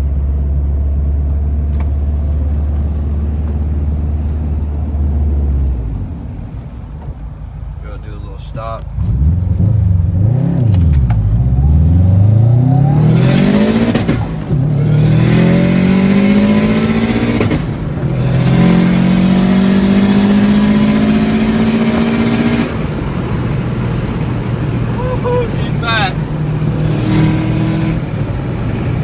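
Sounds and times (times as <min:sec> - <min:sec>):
car engine accelerating through gears: 0:08.5 - 0:29.0.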